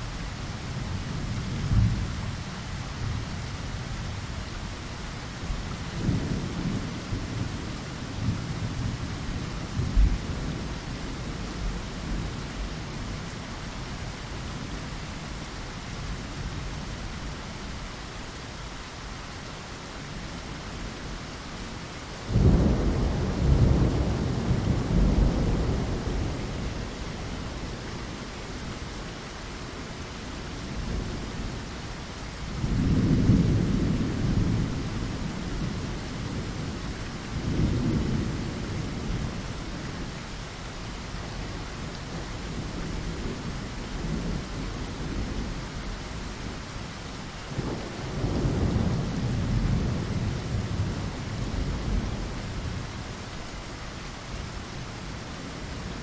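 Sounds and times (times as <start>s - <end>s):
steady rain: 0.0s - 56.0s
rolling thunder: 5.9s - 12.3s, 22.3s - 28.7s, 32.6s - 39.8s, 47.5s - 53.0s.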